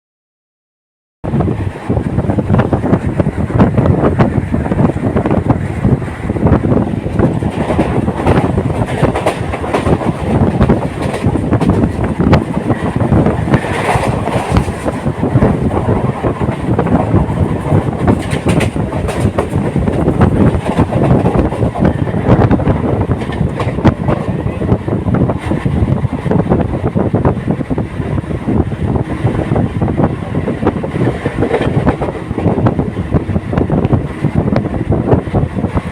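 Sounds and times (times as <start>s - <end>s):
train rumbling along track: 1.2s - 35.9s
wheels clattering over rail joints: 6.7s - 24.7s.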